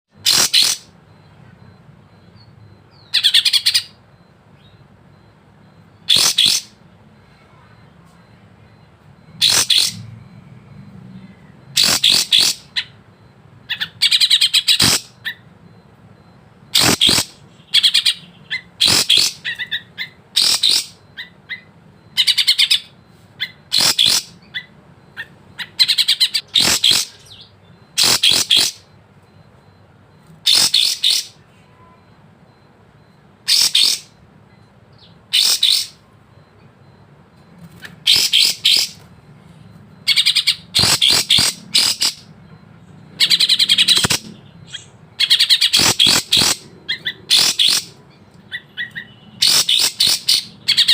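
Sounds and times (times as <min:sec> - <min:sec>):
songbird chirping: 0:00.2 - 0:50.9.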